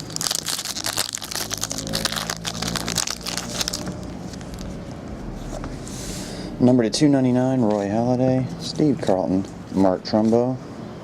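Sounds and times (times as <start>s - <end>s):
wrapper and cards rustling: 0.0s - 4.9s.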